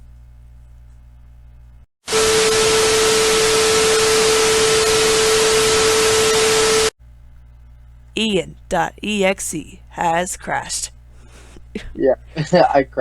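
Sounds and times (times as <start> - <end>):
loud static hiss: 2.1 - 6.9, 9.2 - 13.0.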